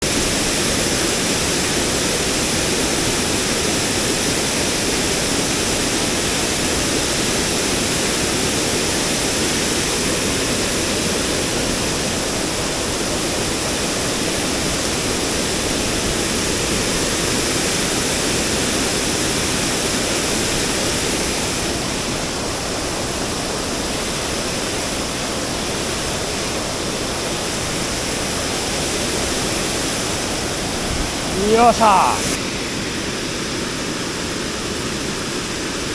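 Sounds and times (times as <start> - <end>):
mountain stream rushing: 17.6 - 35.9.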